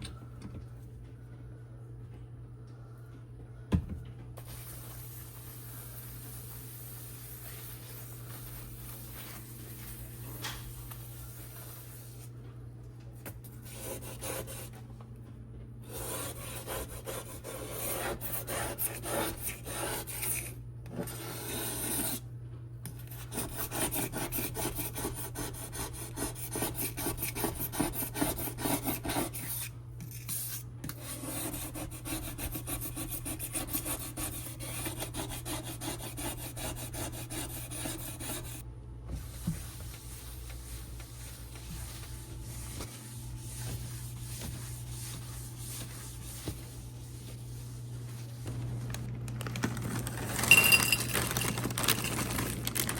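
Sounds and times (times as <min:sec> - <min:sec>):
steady low hum: 0:00.0 - 0:23.5
scrubbing a hard surface: 0:39.2 - 0:48.5.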